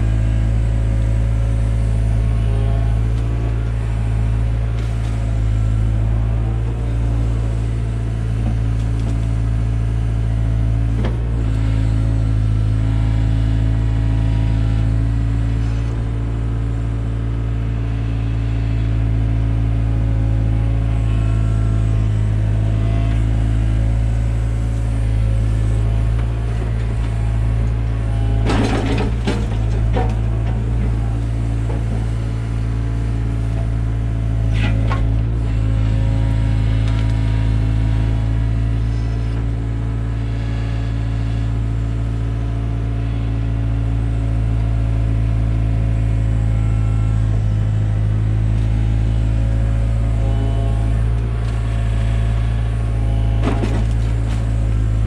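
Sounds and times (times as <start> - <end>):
excavator diesel engine running: 0.0 - 55.0
knocks and clatter: 28.3 - 31.0, 53.3 - 54.5.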